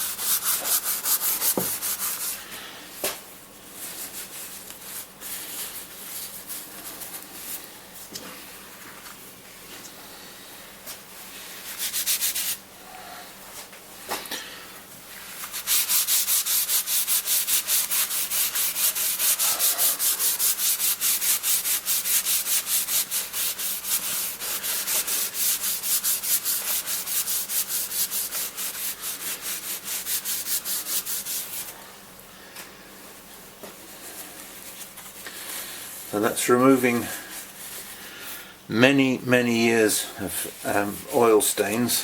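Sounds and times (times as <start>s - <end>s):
abrasive scrubbing on metal paintwork: 15.2s - 31.6s.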